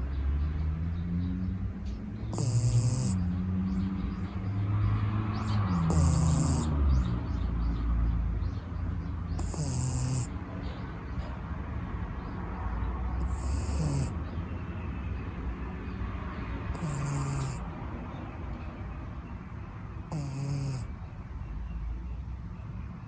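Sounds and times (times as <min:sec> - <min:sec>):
puppy snoring: 0:02.2 - 0:04.4, 0:05.1 - 0:08.2, 0:09.0 - 0:11.4, 0:13.0 - 0:14.4, 0:16.6 - 0:17.7, 0:20.0 - 0:21.1.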